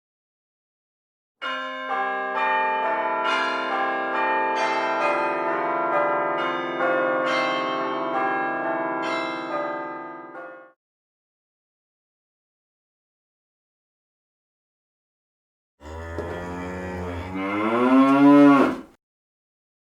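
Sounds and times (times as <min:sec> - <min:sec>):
church bells pealing: 0:01.4 - 0:10.5.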